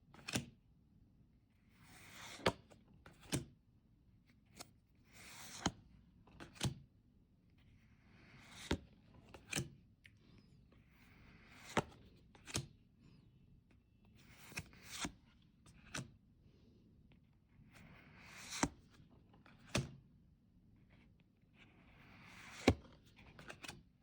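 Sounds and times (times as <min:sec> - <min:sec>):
trading cards sliding rustle: 0:01.8 - 0:03.4, 0:05.0 - 0:06.7, 0:08.1 - 0:09.7, 0:10.3 - 0:12.8, 0:14.2 - 0:16.1, 0:17.7 - 0:18.8, 0:21.7 - 0:23.8.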